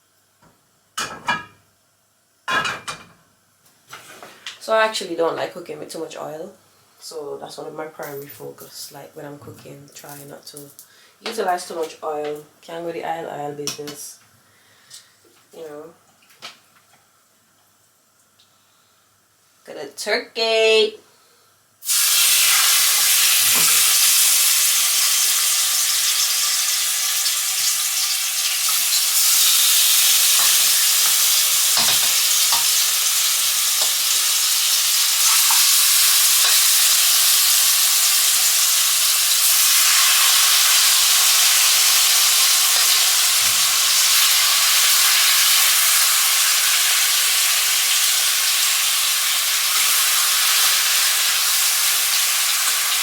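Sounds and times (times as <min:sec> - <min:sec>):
food sizzling in a pan: 0:21.8 - 0:53.0.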